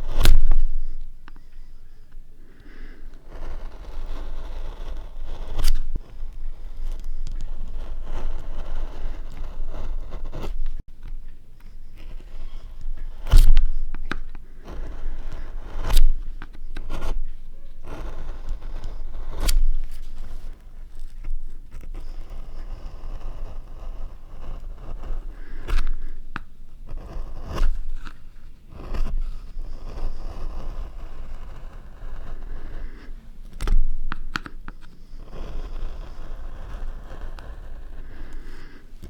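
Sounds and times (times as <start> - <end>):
gouge scraping linoleum: 0.0 - 39.0.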